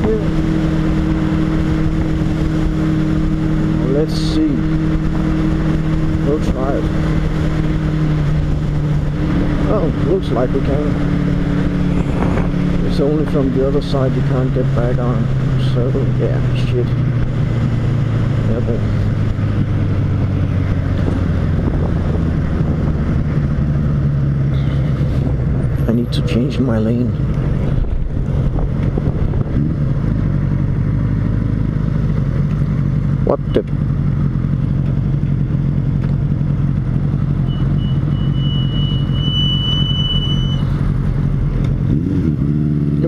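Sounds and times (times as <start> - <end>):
motorcycle engine cruising: 0.0 - 43.0
wind and road noise: 0.0 - 43.0
wind on microphone: 11.6 - 12.7, 19.5 - 23.4, 27.5 - 30.0
thin high whistle: 37.5 - 40.7.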